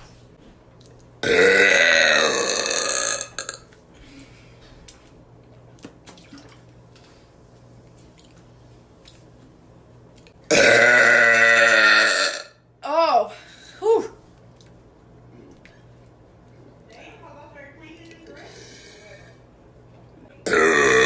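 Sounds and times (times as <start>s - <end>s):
woman burping loudly: 1.2s - 3.7s, 10.5s - 12.6s, 20.4s - 21.0s.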